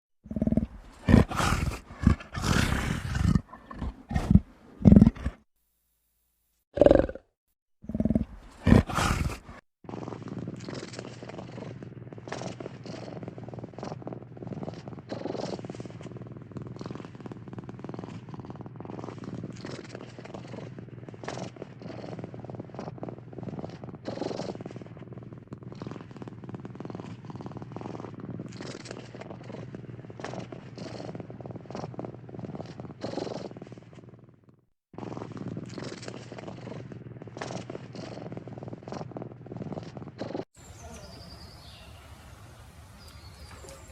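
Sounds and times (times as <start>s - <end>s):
animal purring: 0.2s - 5.5s, 6.8s - 42.0s
big cat roaring: 0.3s - 5.4s, 7.9s - 14.0s.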